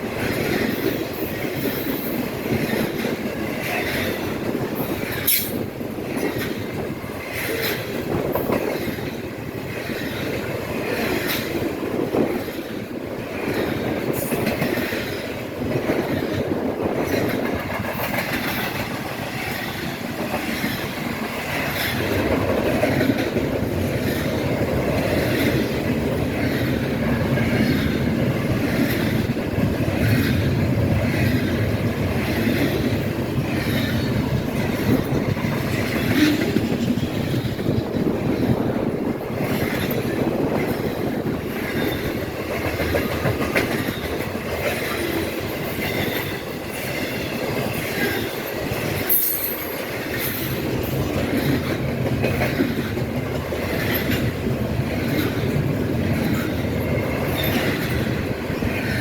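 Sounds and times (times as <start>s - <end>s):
freight train cars rolling: 0.0s - 59.0s
wheels clicking over rail joints: 0.0s - 59.0s
wheel squeal: 57.3s - 57.9s.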